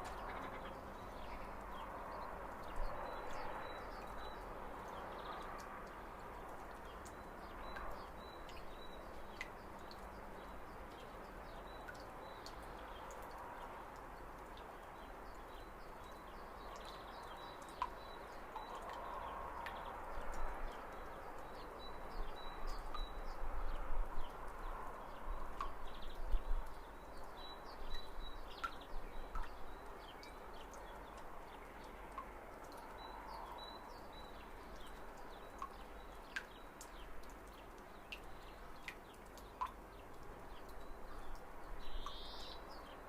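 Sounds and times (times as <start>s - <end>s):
small birds chirping: 25.2s - 43.0s.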